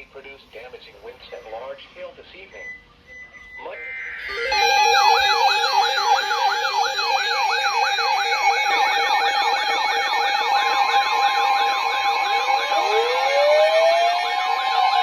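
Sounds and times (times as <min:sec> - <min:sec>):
siren two-note warble: 0:03.1 - 0:15.0
siren fast yelp: 0:03.2 - 0:15.0
siren slow rising wail: 0:03.4 - 0:15.0.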